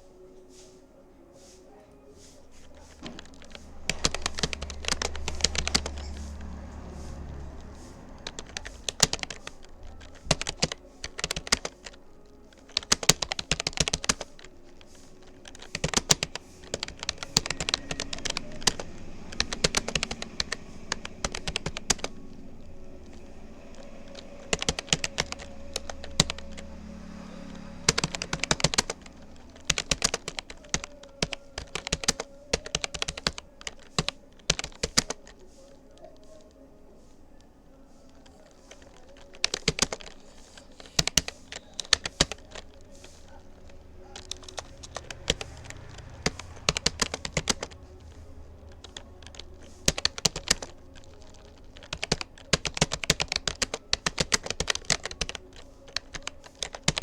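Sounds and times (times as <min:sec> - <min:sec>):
keyboard key clicks: 0:27.8 - 0:35.4, 0:38.2 - 0:57.0.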